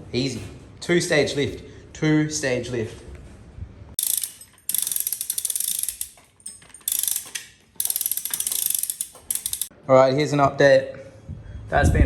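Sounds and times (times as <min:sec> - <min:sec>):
chain hoist ratchet clicking: 0:04.0 - 0:09.7.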